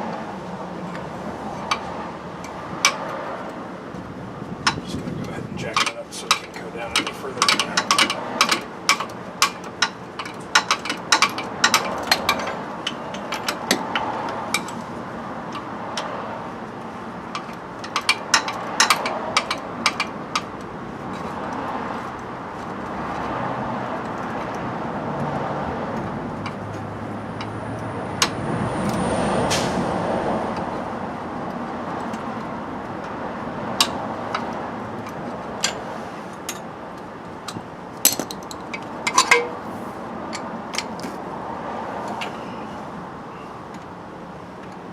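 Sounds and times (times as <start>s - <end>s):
jack clicking metallically: 4.6s - 16.2s, 36.4s - 41.0s.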